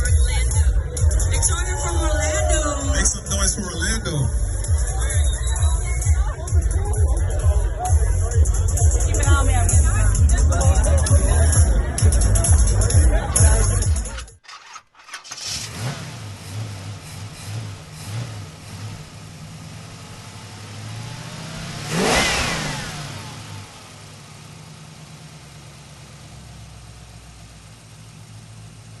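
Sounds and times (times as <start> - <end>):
car engine running: 0.0 - 14.4, 15.1 - 29.0
car accelerating past: 15.4 - 24.2.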